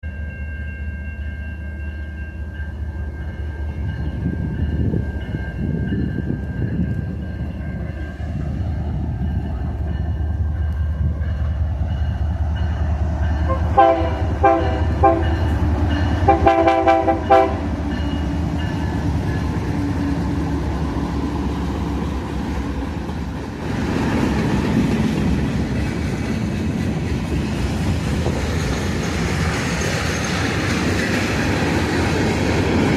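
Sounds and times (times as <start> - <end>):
diesel locomotive rumbling: 0.1 - 32.9
locomotive air horn blasts: 13.5 - 15.5, 16.2 - 17.7.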